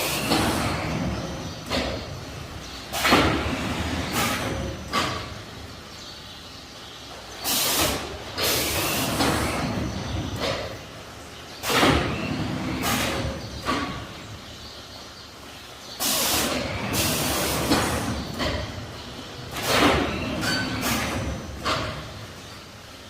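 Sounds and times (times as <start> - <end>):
bagging machine hissing: 0.0 - 5.4, 7.4 - 10.8, 11.6 - 14.1, 16.0 - 22.8
machine clattering: 16.0 - 22.3.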